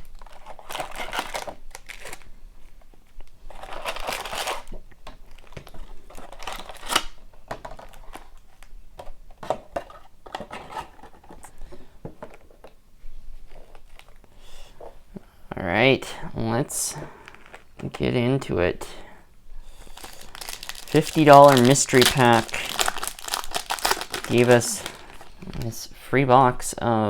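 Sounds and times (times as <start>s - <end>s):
plastic wrapping crinkling and tearing: 0.0s - 2.3s, 3.5s - 8.7s, 17.2s - 17.7s, 19.8s - 25.8s.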